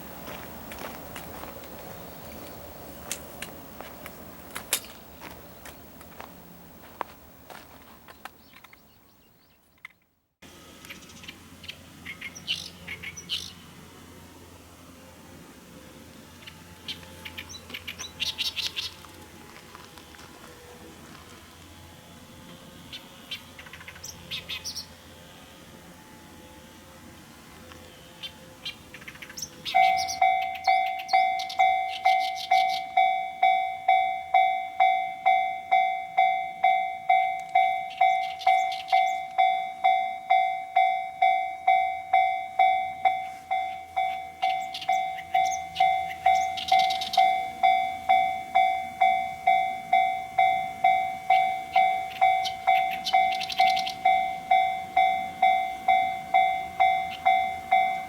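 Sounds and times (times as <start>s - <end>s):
level crossing warning bell: 0.0s - 8.2s, 29.7s - 58.0s.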